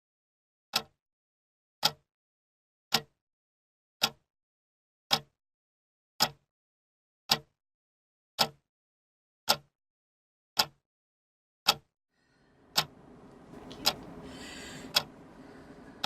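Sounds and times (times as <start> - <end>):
watch ticking: 12.7 - 15.3.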